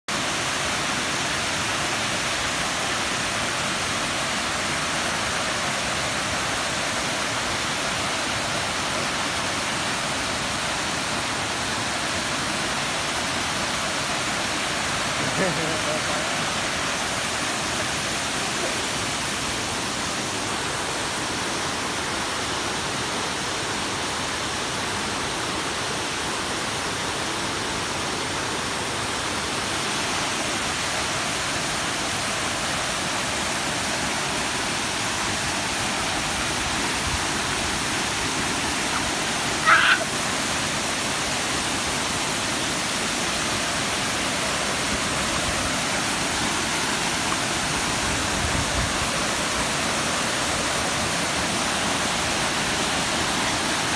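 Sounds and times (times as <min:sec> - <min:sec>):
waterfall rushing: 0:00.1 - 0:53.9.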